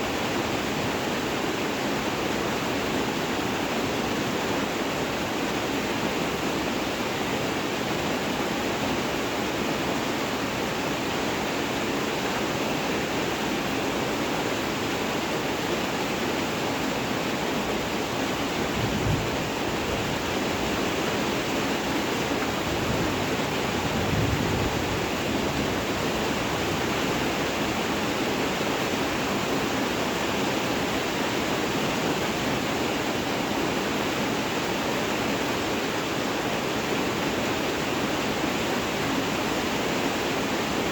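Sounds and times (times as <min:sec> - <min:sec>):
steady rain: 0:00.0 - 0:40.9.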